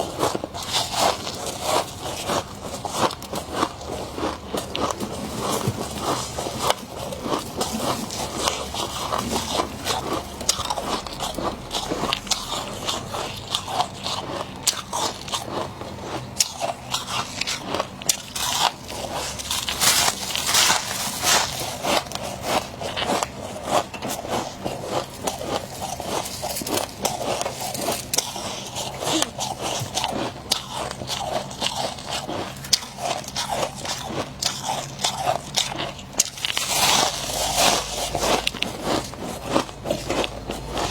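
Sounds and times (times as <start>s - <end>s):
crunchy frost being chewed: 0.0s - 40.9s.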